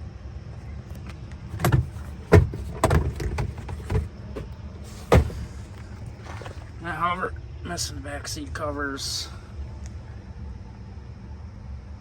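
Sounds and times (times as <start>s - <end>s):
car trim panels knocking: 1.0s - 5.7s.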